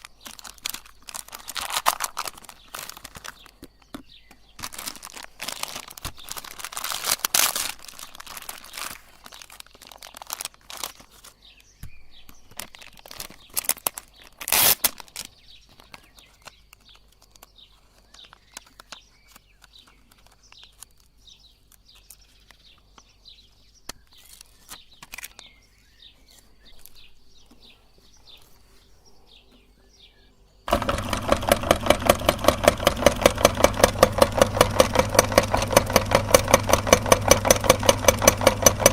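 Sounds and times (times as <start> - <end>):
rustling: 0.0 - 21.2, 24.0 - 29.2
meat grinder motor pulsing hum: 30.7 - 38.9.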